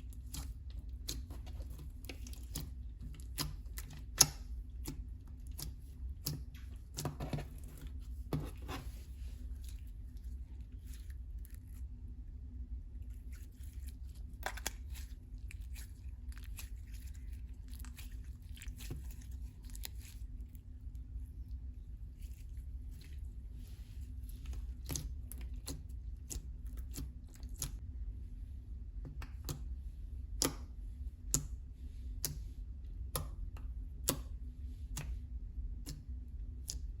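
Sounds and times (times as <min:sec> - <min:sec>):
steady low hum: 0:00.0 - 0:37.0
slime sticky clicks and crackles: 0:00.1 - 0:07.1.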